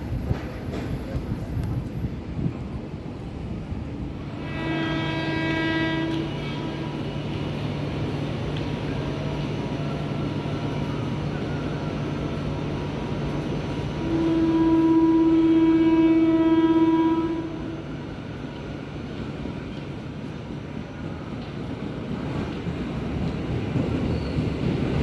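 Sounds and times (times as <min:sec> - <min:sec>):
train horn blast: 0:04.3 - 0:07.0, 0:13.9 - 0:18.1.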